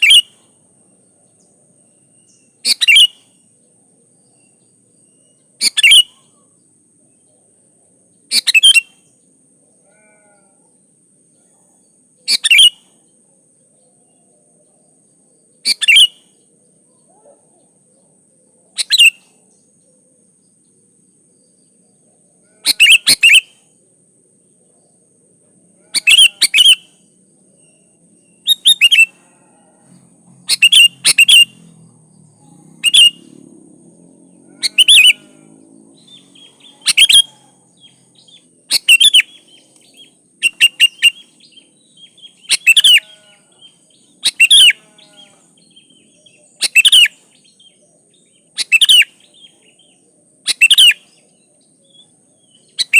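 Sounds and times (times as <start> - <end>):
bulbul calling: 0.0 - 0.5, 2.2 - 3.3, 5.4 - 6.4, 8.3 - 9.0, 12.2 - 12.9, 15.6 - 16.3, 18.7 - 19.4, 25.9 - 27.0, 27.6 - 29.2, 30.4 - 31.8, 32.4 - 33.4, 34.5 - 52.9.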